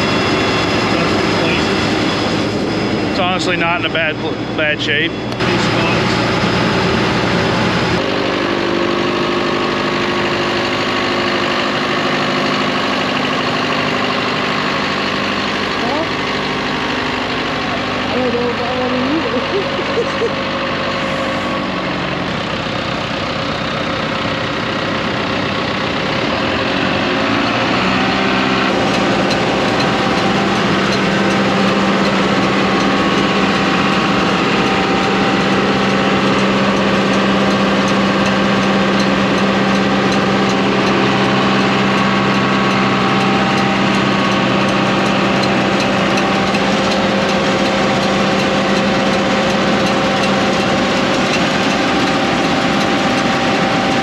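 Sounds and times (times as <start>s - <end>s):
tractor diesel engine revving: 0.0s - 54.0s.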